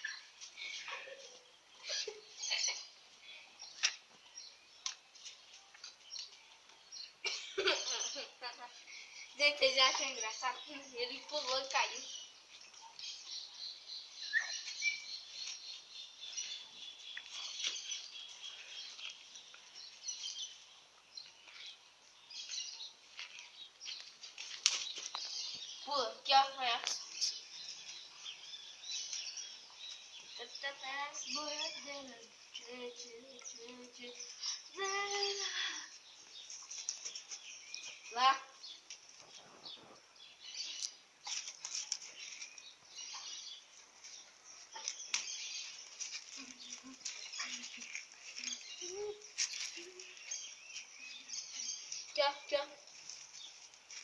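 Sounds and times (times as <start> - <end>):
birds chirping: 0.0 - 54.0
scuffing on stony ground: 12.0 - 25.8, 36.0 - 54.0.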